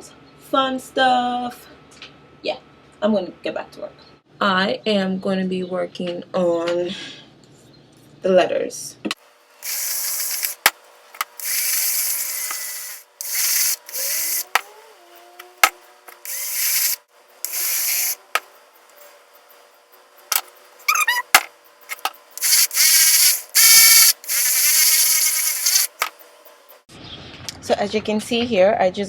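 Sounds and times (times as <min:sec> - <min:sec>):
spray paint can hissing: 0:09.6 - 0:10.7, 0:11.4 - 0:14.5, 0:16.3 - 0:18.2, 0:22.4 - 0:26.1.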